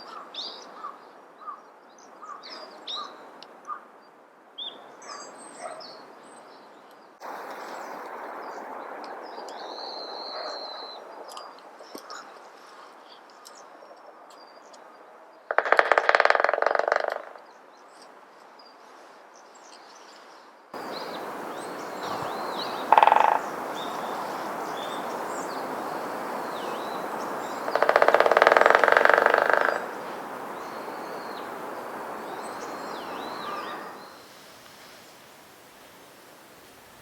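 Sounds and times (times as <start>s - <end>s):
woodpecker drumming on wood: 15.5s - 17.4s, 20.8s - 32.7s
thin high bird calls: 20.8s - 35.2s.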